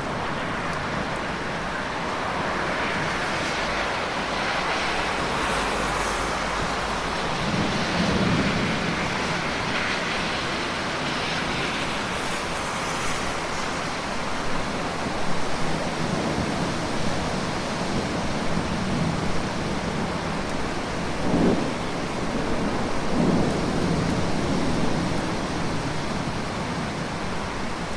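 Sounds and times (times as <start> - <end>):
steady rain: 0.0 - 27.9.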